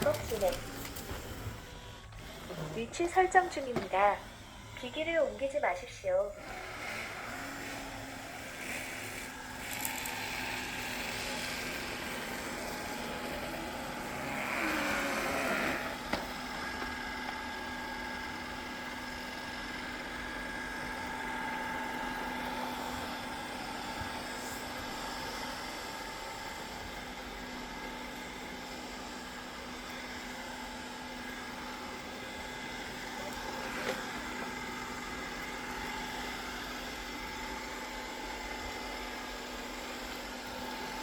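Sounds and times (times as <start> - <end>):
robot vacuum humming: 0.0 - 41.0.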